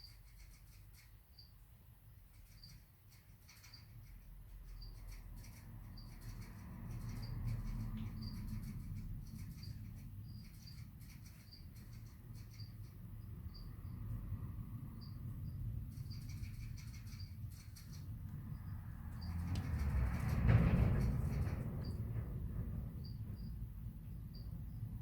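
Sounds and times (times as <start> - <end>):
low rumble: 13.0 - 25.0.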